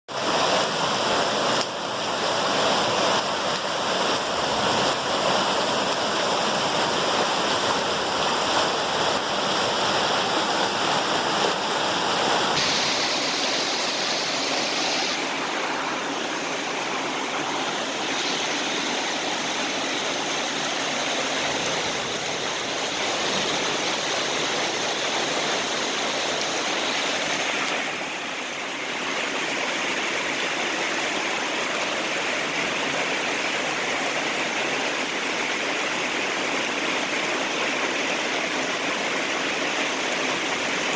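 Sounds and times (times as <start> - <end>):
heavy rain: 0.1 - 40.9
running water: 0.1 - 40.9.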